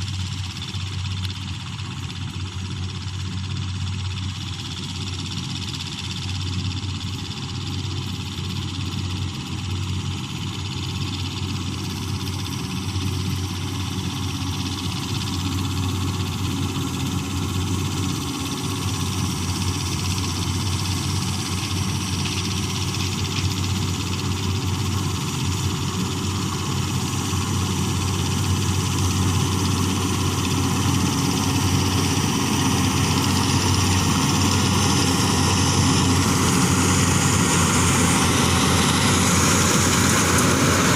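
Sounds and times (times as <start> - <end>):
combine harvester engine running: 0.0 - 40.9.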